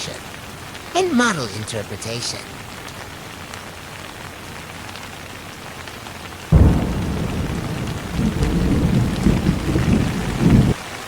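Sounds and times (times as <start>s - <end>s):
steady rain falling: 0.0s - 11.0s
deep rolling thunder: 6.5s - 10.8s.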